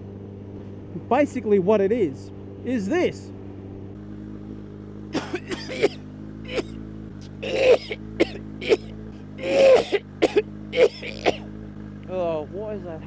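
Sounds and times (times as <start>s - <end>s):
motorcycle engine idling: 0.0s - 13.0s
man coughing: 5.2s - 11.4s.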